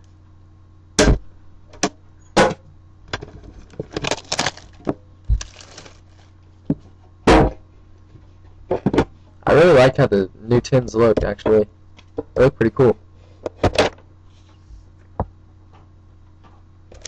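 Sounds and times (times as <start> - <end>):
rustling: 3.4 - 6.4.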